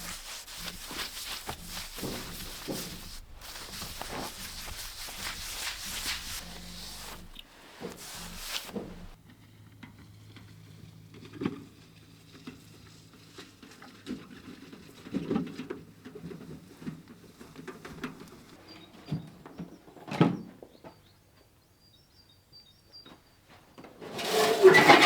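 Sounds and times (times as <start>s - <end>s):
rustling: 0.0s - 9.2s, 24.0s - 25.0s.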